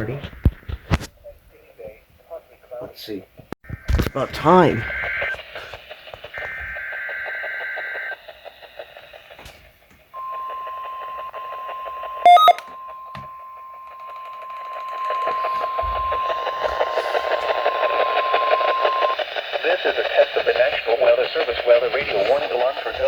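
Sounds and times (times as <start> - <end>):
steady warning alarm tone: 10.2 - 19.2
digital header burst: 12.3 - 12.6
short loud beep: 12.3 - 15.7.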